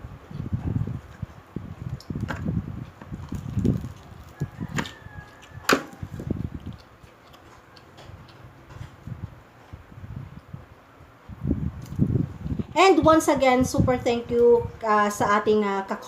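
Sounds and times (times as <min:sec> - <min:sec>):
chewing crispy pork skin: 0:00.3 - 0:10.5.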